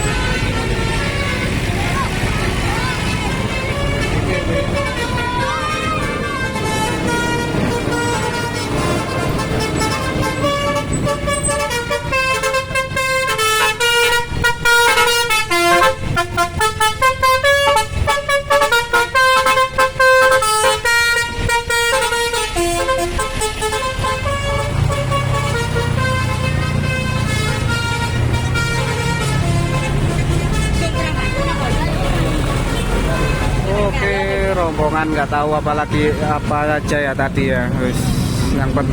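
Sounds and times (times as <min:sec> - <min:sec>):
multi-tone bus horn tune: 0:00.0 - 0:37.0
bus engine rumble: 0:00.0 - 0:38.9.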